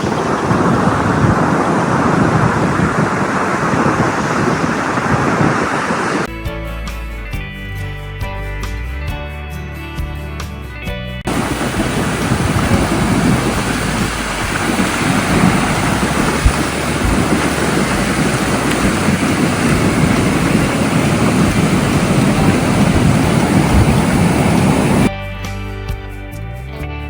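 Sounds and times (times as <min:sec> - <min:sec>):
ocean surf on beach: 0:00.0 - 0:06.3, 0:11.3 - 0:25.1
wind on microphone: 0:00.0 - 0:06.3, 0:11.3 - 0:25.1.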